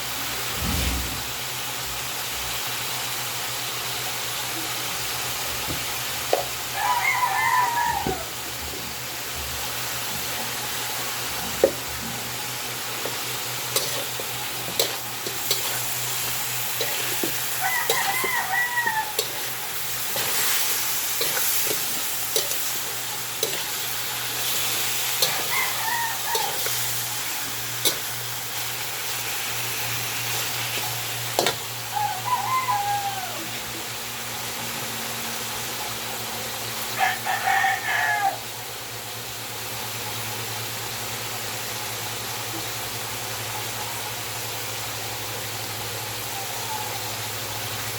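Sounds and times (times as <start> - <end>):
food sizzling in a pot: 0.0 - 47.9
rooster crowing: 6.6 - 8.6, 13.8 - 28.7, 30.4 - 33.8, 36.9 - 38.6
utensil stirring in a pot: 11.6 - 31.7.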